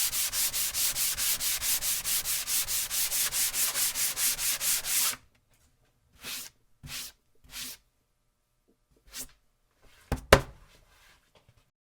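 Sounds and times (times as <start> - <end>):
sandpaper rubbing on wood: 0.0 - 5.2.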